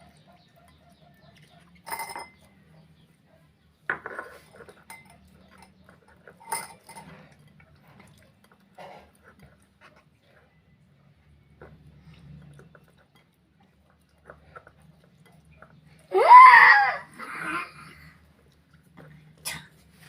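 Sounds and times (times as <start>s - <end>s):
dishes clinking: 1.7s - 2.6s, 3.9s - 9.3s.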